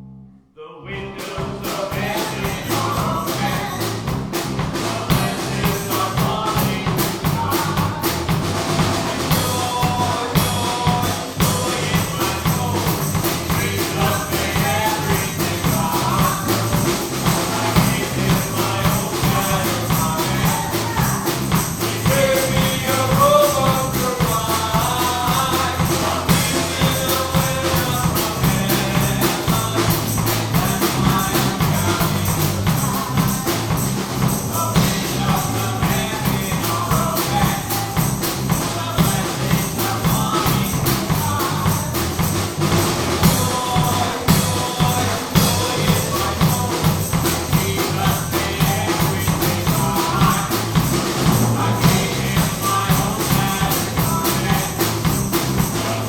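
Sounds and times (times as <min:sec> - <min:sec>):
voices singing: 0:00.6 - 0:56.0
upbeat gospel band music: 0:00.9 - 0:56.0.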